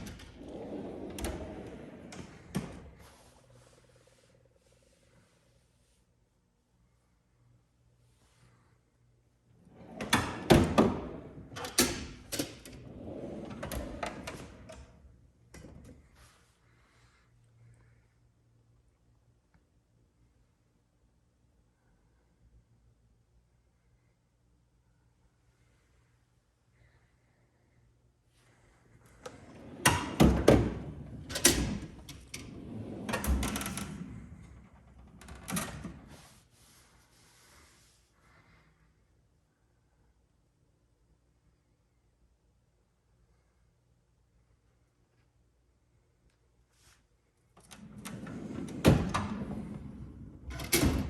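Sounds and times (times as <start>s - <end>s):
drawer sliding on runners: 0.0s - 3.1s, 9.7s - 14.8s, 29.2s - 36.4s, 47.6s - 51.0s.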